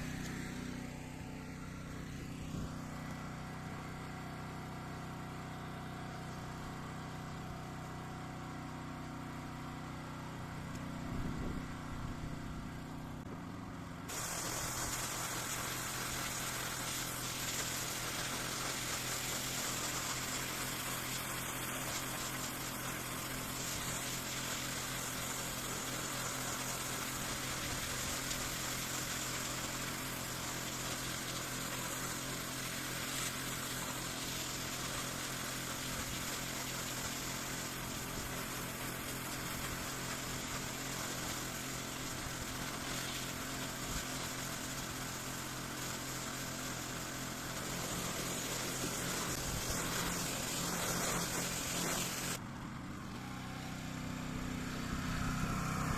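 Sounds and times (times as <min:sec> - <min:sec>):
pressure washer motor drone: 0:00.0 - 0:55.9
water jet hissing: 0:14.1 - 0:52.4.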